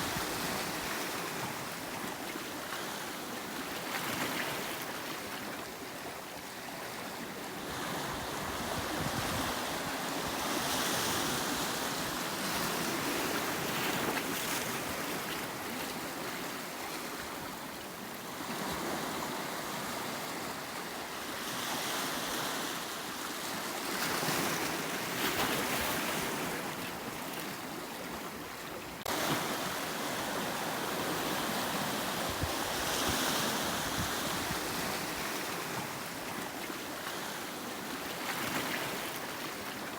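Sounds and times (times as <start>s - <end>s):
waves breaking on rocky shore: 18.3s - 39.9s.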